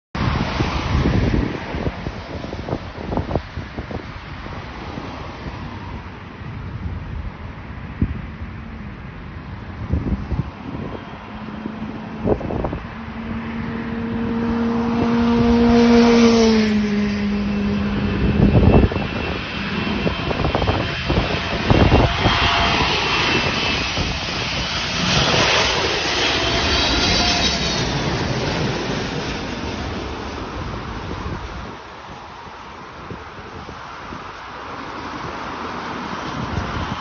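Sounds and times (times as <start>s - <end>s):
jet airliner passing overhead: 0.2s - 37.0s
wind buffeting microphone: 0.2s - 37.0s.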